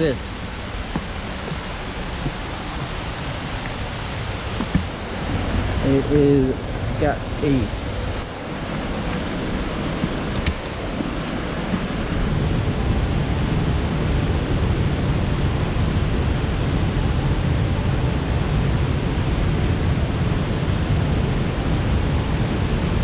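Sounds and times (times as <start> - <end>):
waterfall rushing: 0.0 - 10.9.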